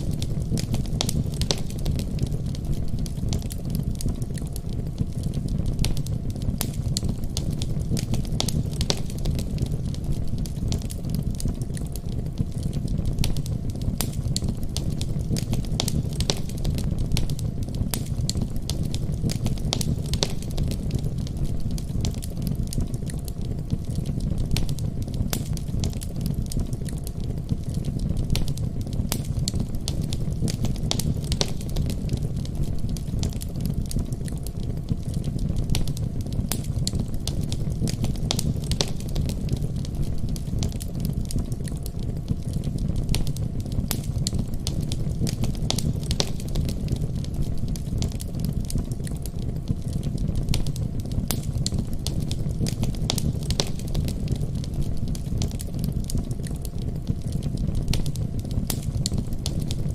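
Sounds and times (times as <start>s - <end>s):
fire crackling and popping: 0.0s - 59.9s
low rumble of flames: 0.0s - 59.9s.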